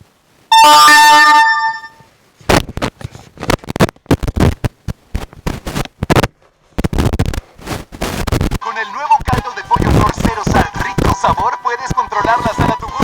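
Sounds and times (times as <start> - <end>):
horn-like alert tone: 0.5 - 2.1
choppy static bursts: 0.5 - 13.0.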